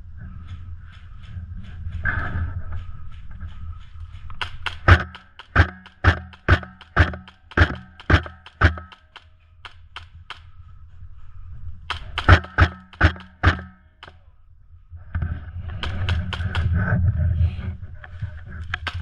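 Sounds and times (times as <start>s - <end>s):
airsoft gun shots: 4.4s - 10.4s, 11.9s - 14.2s, 15.8s - 16.8s.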